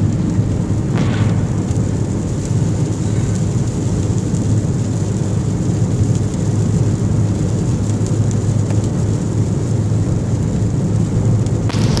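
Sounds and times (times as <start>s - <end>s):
heavy rain pouring: 0.0s - 12.0s
low rumble: 0.0s - 12.0s
raindrop ticks: 1.1s - 9.0s.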